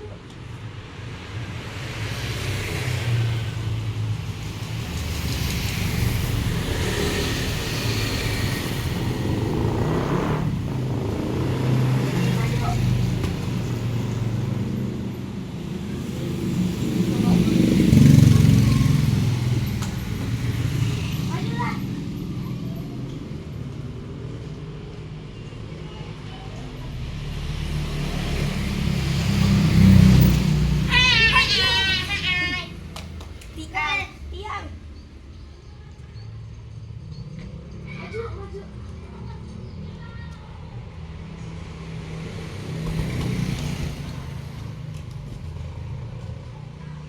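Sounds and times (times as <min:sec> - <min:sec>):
vehicle engine running: 0:06.5 - 0:15.2.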